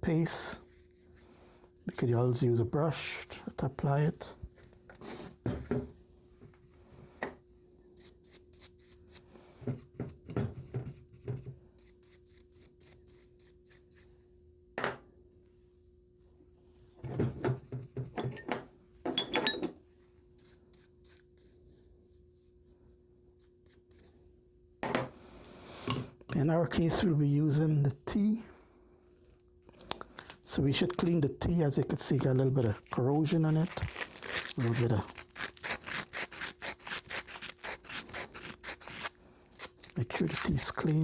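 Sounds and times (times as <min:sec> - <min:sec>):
faint steady hum: 0:11.0 - 0:41.0.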